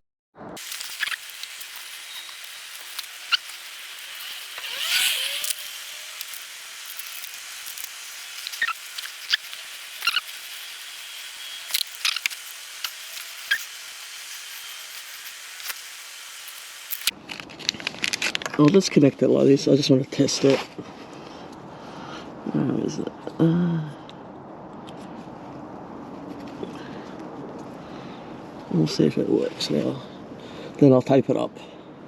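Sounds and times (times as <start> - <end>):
hand tools clicking and snipping: 0.6 - 15.9.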